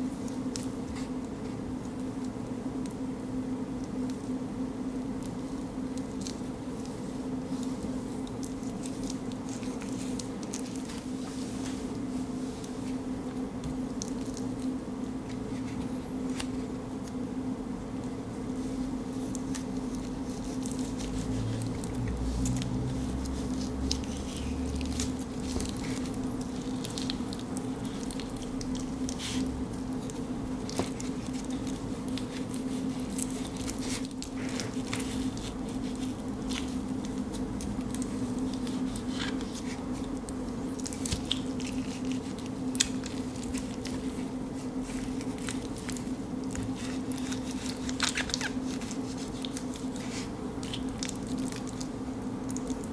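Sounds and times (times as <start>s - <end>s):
steady low hum: 0.0s - 52.9s
knife cutting and scraping fruit: 19.2s - 40.1s, 40.8s - 51.7s.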